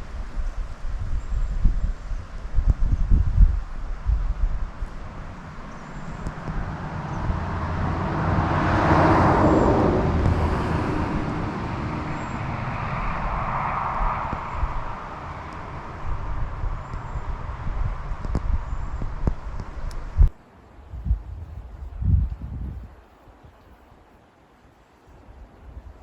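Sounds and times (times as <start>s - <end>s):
vehicle passing on road: 3.6s - 20.3s.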